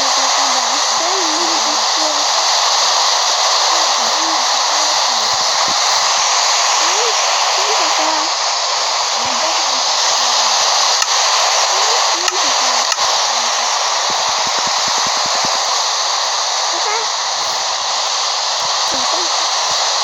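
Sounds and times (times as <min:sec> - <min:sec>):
faint high-pitched voices: 0:00.0 - 0:02.4, 0:03.7 - 0:05.5, 0:06.8 - 0:08.4, 0:11.6 - 0:13.6, 0:18.9 - 0:19.5
loud rushing hiss: 0:00.0 - 0:20.0.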